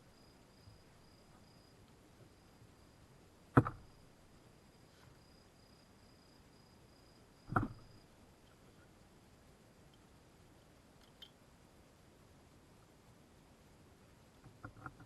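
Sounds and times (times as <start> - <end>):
insect trill: 0.0 - 8.2.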